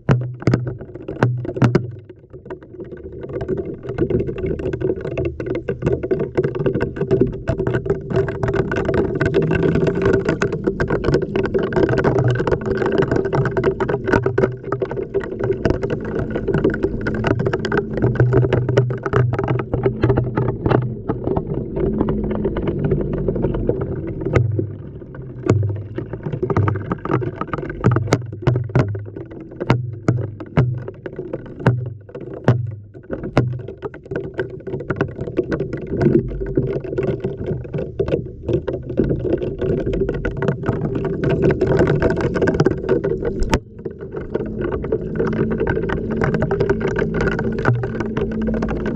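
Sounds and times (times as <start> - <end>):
knocks against drum: 0.0 - 2.0
low thuds of tumbling load: 8.3 - 34.3.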